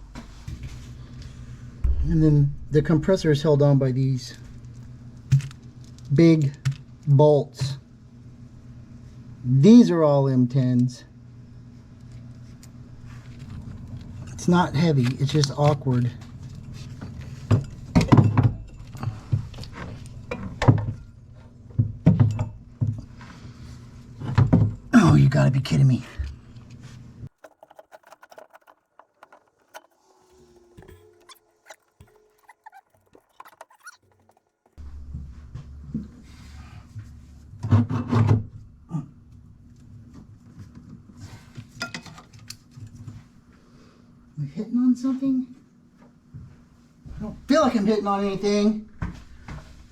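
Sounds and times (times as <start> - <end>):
steady low hum: 0.0 - 9.7
low steady hum: 0.0 - 27.3
knock: 1.8 - 2.6
heavy metal knocks and clunks: 1.8 - 3.5
metal parts clunking and clattering: 27.3 - 34.8.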